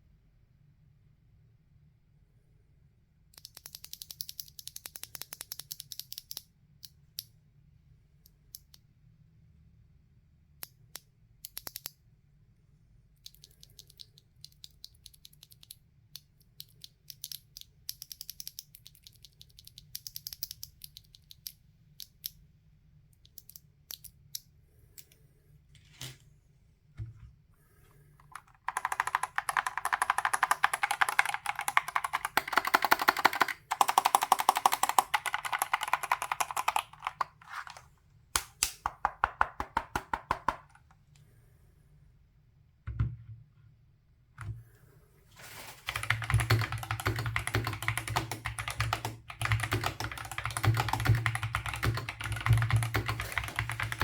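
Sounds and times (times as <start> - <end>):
mechanical keyboard typing: 3.4 - 6.4, 28.2 - 37.8, 45.9 - 54.0.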